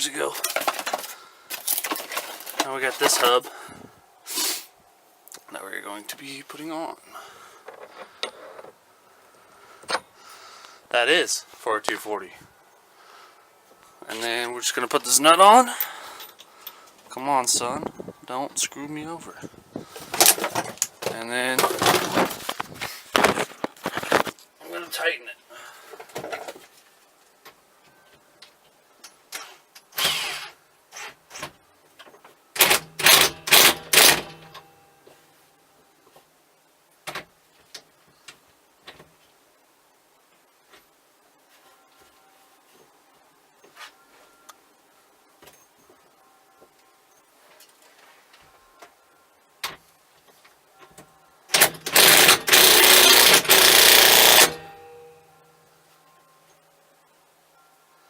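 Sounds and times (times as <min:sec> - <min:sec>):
faint ringing hum: 0:00.0 - 0:22.6, 0:23.2 - 0:29.4, 0:31.6 - 0:58.0
ratchet wrench clicking: 0:51.6 - 0:54.6.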